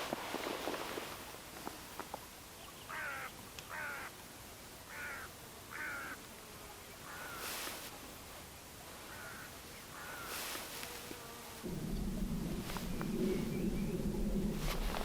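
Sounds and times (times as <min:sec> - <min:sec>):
crow cawing: 0:02.9 - 0:04.1, 0:04.9 - 0:06.2, 0:07.0 - 0:07.5, 0:09.1 - 0:10.4.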